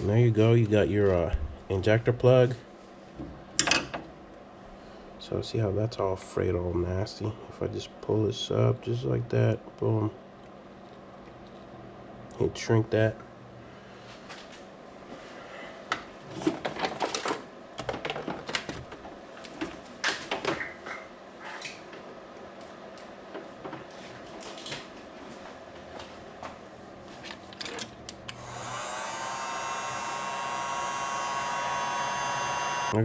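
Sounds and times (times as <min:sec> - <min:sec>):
heat gun fan whine: 0:27.6 - 0:33.0.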